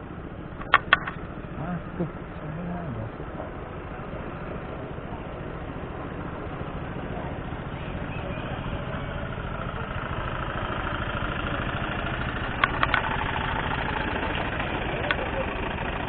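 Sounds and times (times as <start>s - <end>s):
boat engine rumbling: 0.0s - 16.0s
sharp clicks: 0.6s - 1.3s, 12.4s - 14.3s.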